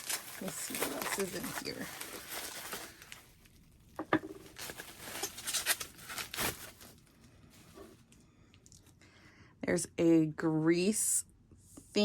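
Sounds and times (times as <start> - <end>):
packaging rustling and crinkling: 0.0 - 8.0.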